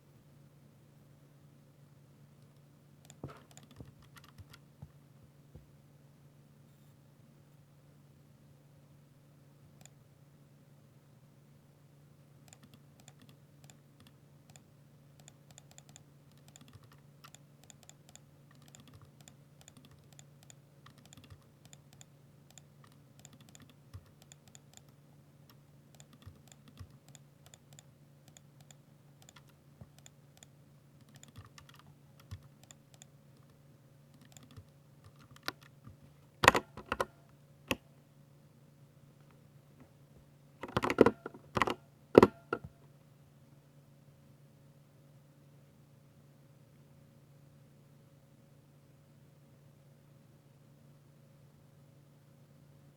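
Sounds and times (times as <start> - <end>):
mechanical keyboard typing: 3.1 - 4.6, 12.5 - 37.1, 40.6 - 42.4.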